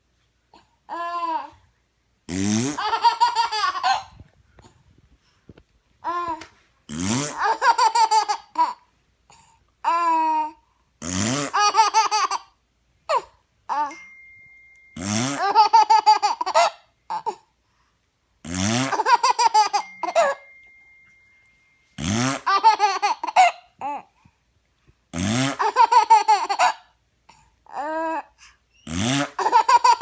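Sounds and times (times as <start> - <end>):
baby laughing hard: 2.7 - 4.1, 7.3 - 8.8, 11.5 - 12.5, 15.4 - 17.4, 18.8 - 20.4, 22.4 - 24.1, 25.5 - 26.9, 29.2 - 30.0.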